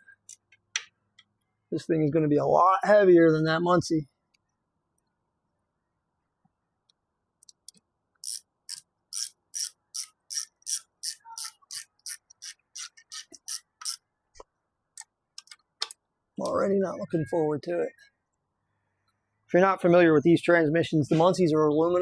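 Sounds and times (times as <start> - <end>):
ratchet wrench clicking: 7.4 - 14.0.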